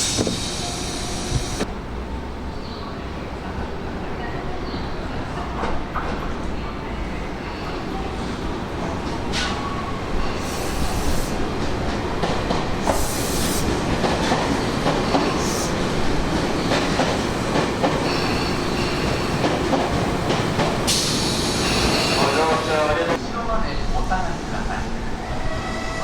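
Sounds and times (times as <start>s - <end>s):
train rumble: 0.0s - 26.0s.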